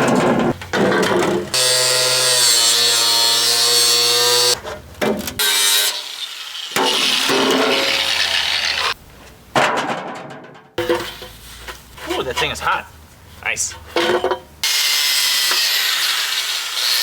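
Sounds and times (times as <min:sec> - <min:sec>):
power tool cutting metal: 0:01.5 - 0:04.6, 0:05.4 - 0:09.0, 0:14.6 - 0:17.0.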